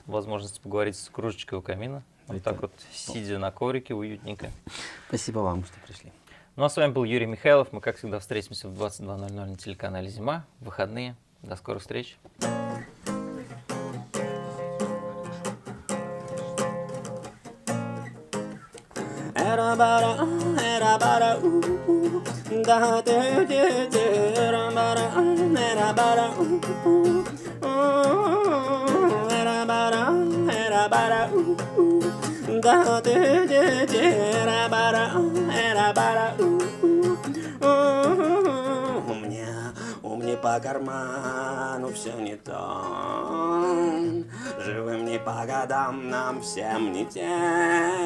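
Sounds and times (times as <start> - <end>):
acoustic guitar strumming: 12.4 - 48.0
person singing: 19.0 - 48.0.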